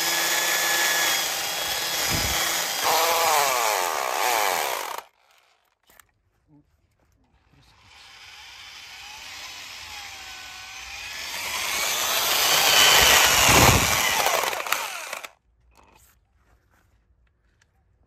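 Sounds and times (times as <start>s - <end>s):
mini chainsaw sawing wood: 0.0s - 5.6s, 7.6s - 15.4s.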